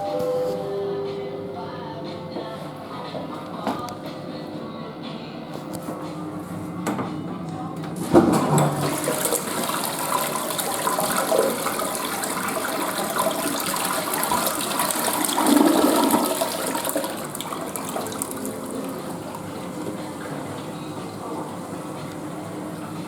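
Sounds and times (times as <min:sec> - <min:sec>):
toilet flushing: 0:07.8 - 0:23.0.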